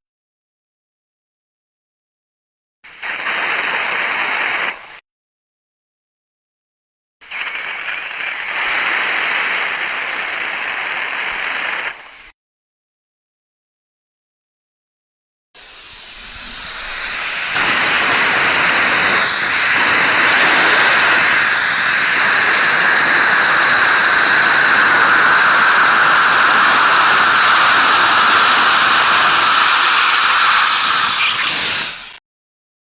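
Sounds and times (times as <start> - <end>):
suction pump hissing: 2.9 - 5.0, 7.2 - 12.3, 15.6 - 32.2.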